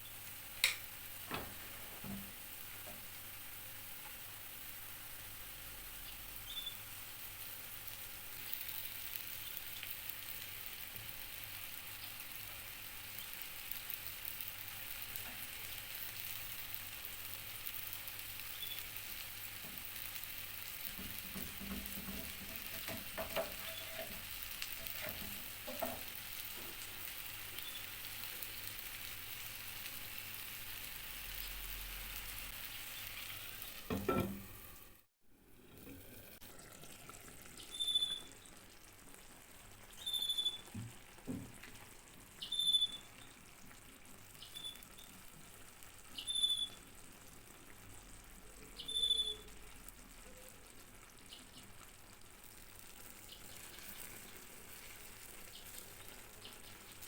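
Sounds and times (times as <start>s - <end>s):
food sizzling in a pan: 0.0s - 57.0s
utensil knocking against pan: 20.9s - 23.8s.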